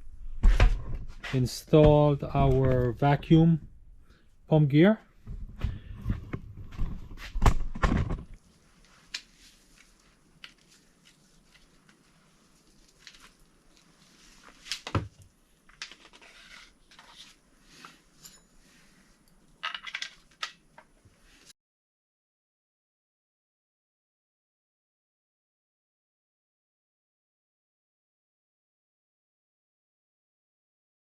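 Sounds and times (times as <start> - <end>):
tools and metal parts clattering: 17.8 - 18.6, 19.6 - 20.6.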